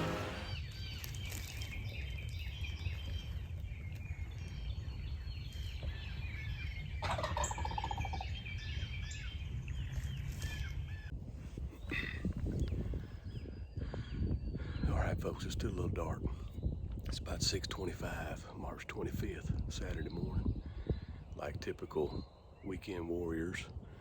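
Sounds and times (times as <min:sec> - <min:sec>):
songbirds chirping: 0:00.0 - 0:24.0
turkey gobble: 0:07.0 - 0:08.2.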